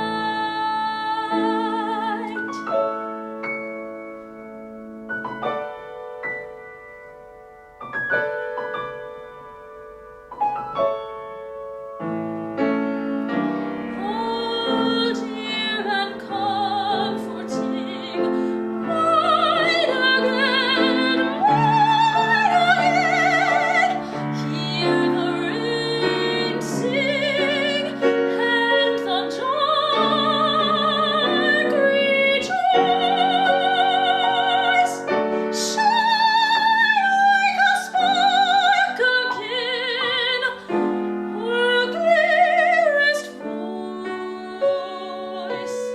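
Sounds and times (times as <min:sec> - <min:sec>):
woman singing with vibrato: 0:00.0 - 0:03.0, 0:13.9 - 0:45.9
piano accompaniment: 0:00.0 - 0:45.9.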